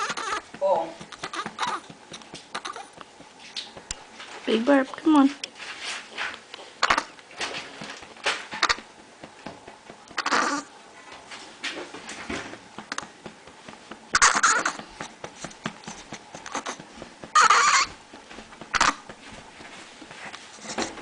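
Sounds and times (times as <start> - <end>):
baby fussing and grunting: 0.0 - 0.4, 1.0 - 1.9
light pats: 0.0 - 4.5, 12.7 - 21.0.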